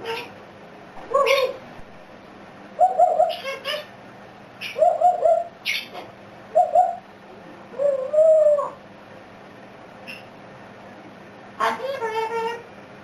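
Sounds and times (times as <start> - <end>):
bird squawks: 0.0 - 0.4, 1.0 - 1.7, 2.8 - 4.0, 4.6 - 7.0, 10.0 - 10.4
bird cooing: 1.0 - 1.8, 2.8 - 3.9, 4.6 - 8.8.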